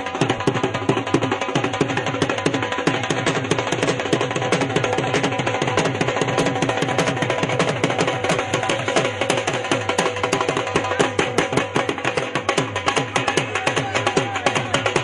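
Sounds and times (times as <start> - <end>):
music with fast dense drumming: 0.0 - 15.0.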